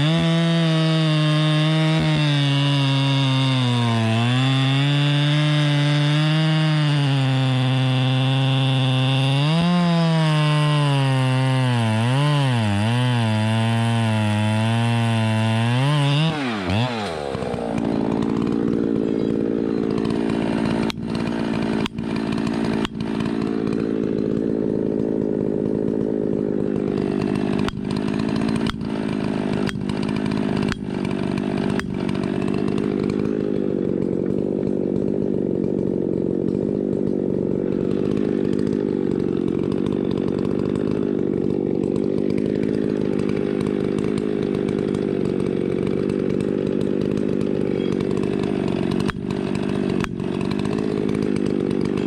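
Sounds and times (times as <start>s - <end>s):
engine running steadily: 16.5s - 52.0s.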